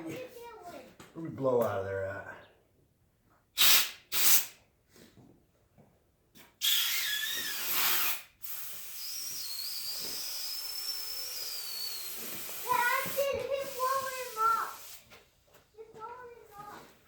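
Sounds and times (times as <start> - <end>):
compressed air hissing: 3.6 - 4.6, 6.6 - 15.1
high whistle: 6.6 - 12.2.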